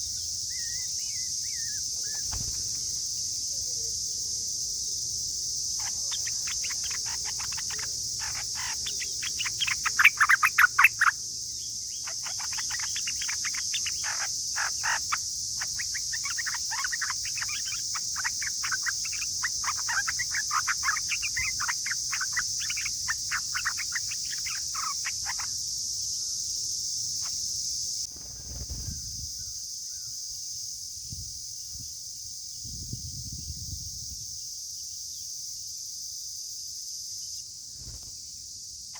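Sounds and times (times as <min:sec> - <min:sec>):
birds chattering calls: 0:00.0 - 0:03.0, 0:05.6 - 0:25.6
high insect drone: 0:00.0 - 0:38.9.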